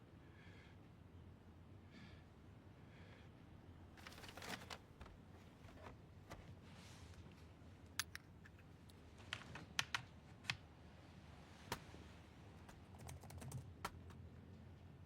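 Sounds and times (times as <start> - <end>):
low room hum: 0.0 - 15.0
soft irregular clicks and taps: 7.9 - 10.7.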